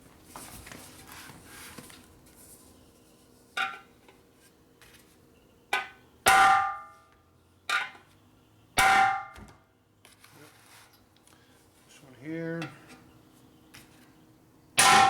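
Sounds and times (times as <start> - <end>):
hammer on metal tank: 6.3 - 6.9, 8.8 - 9.4, 14.8 - 15.0.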